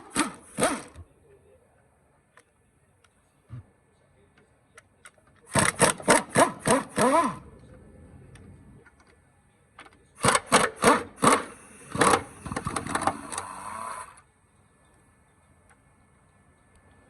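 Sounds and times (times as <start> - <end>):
cordless power tool motor whirring: 0.0 - 1.1, 5.5 - 7.5, 10.2 - 14.2.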